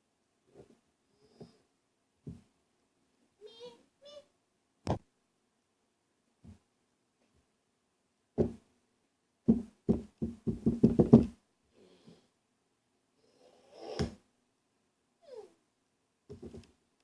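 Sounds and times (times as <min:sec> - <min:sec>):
hard knocks in small room: 0:04.8 - 0:05.1, 0:08.4 - 0:08.7, 0:09.4 - 0:11.4.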